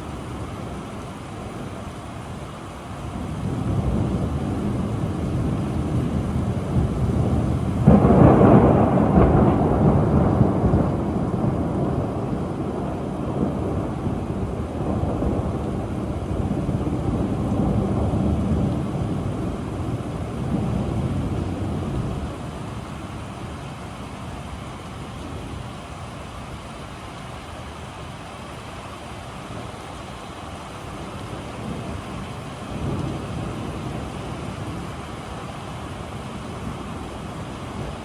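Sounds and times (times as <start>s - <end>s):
rain: 0.0s - 38.0s
rumbling thunder: 3.0s - 23.5s, 31.4s - 35.1s, 36.1s - 38.0s.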